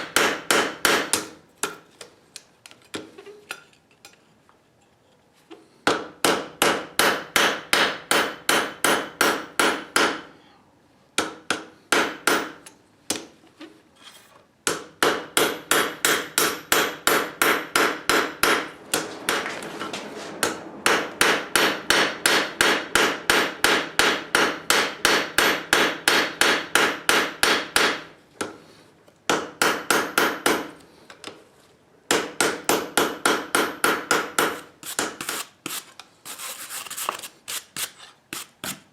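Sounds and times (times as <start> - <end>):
hammer striking steel on anvil: 14.7 - 19.5, 20.4 - 28.6.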